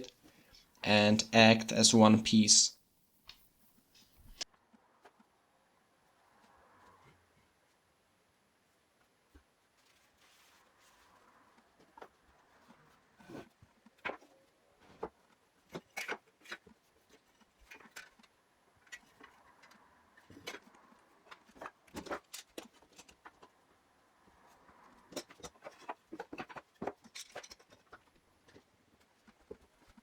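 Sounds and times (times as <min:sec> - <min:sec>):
wooden parts clicking and tapping: 0:24.9 - 0:30.0.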